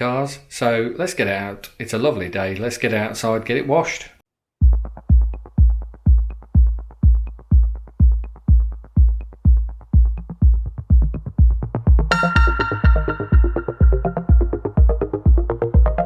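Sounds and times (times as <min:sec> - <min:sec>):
bass kick drum: 0:04.6 - 0:16.0
synth line: 0:12.1 - 0:15.5.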